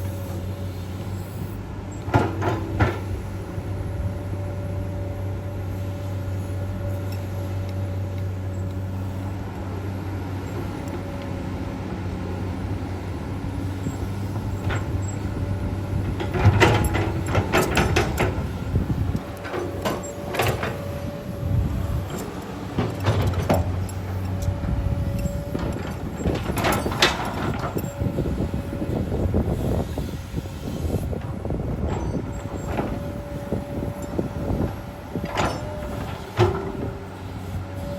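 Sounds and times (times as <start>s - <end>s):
excavator diesel engine running: 0.0s - 37.9s
sharp clanks and knocks: 2.1s - 3.1s, 16.1s - 21.0s, 22.1s - 24.6s, 25.2s - 27.9s, 33.9s - 36.9s.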